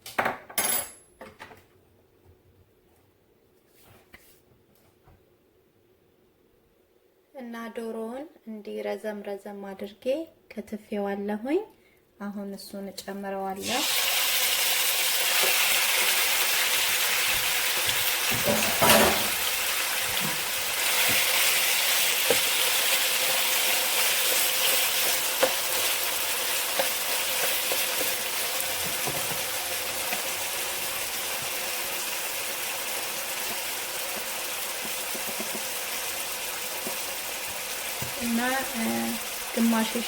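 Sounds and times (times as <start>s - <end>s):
meat sizzling in oil: 13.6s - 40.0s.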